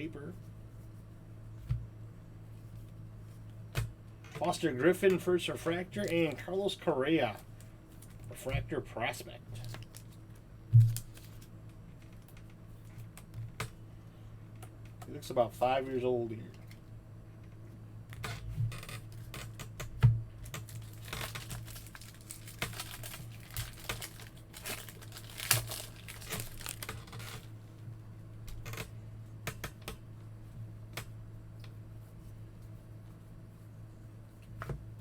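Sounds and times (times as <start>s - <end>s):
low electrical hum: 0.0s - 35.0s
card wrappers crinkling and tearing: 9.5s - 10.2s, 10.9s - 11.5s, 20.4s - 27.5s.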